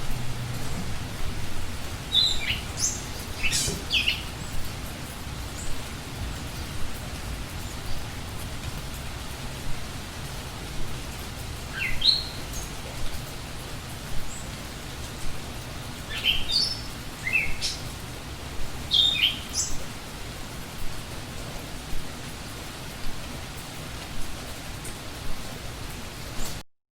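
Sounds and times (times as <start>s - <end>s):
steady rain: 0.0s - 26.6s
songbird chirping: 2.0s - 4.9s, 11.6s - 12.8s, 16.1s - 18.0s, 18.9s - 19.8s.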